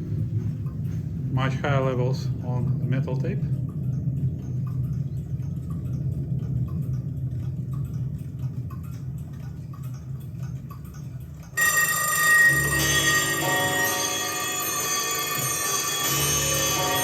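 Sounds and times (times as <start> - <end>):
faint regular ticking: 0.0 - 17.0
low hum: 0.0 - 17.0
music from cassette deck: 11.6 - 17.0.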